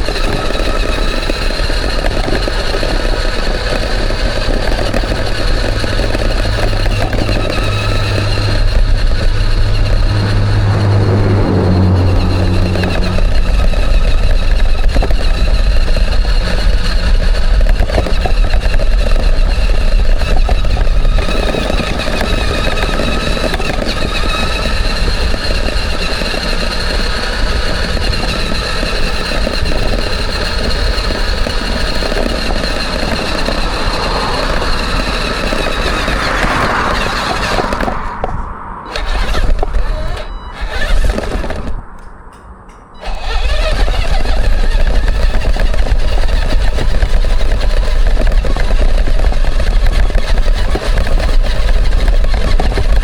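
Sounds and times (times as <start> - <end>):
toy truck electric motor whining: 0.0 - 38.3, 38.9 - 42.2, 43.0 - 53.0
heavy low rumble: 3.6 - 25.4, 29.7 - 45.8.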